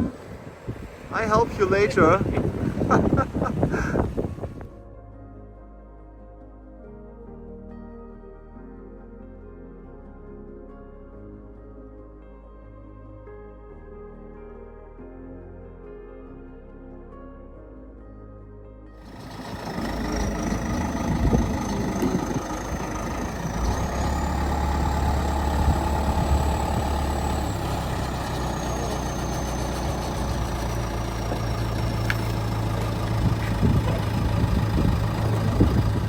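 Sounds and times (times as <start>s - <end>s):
large engine running: 19.0s - 36.0s.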